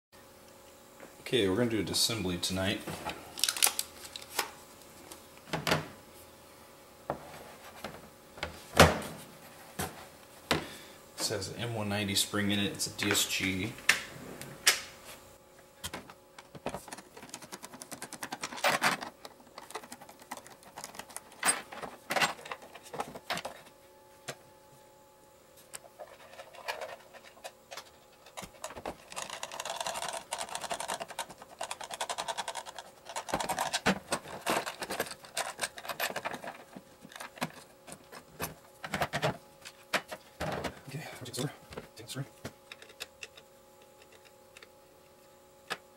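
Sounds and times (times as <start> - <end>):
metal parts rattling and scraping: 16.6 - 23.7, 25.9 - 40.6.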